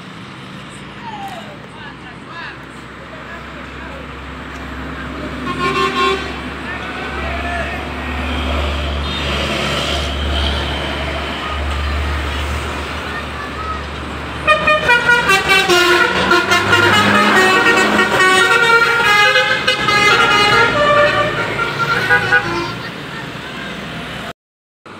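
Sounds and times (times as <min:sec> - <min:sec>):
bus musical horn melody: 0:05.1 - 0:11.7, 0:14.4 - 0:23.0.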